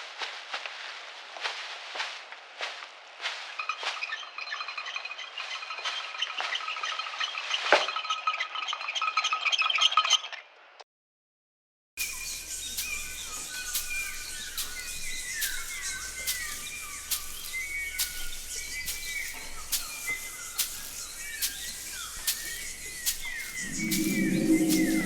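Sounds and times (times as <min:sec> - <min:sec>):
bird chirps sliding downward: 0:12.0 - 0:25.0.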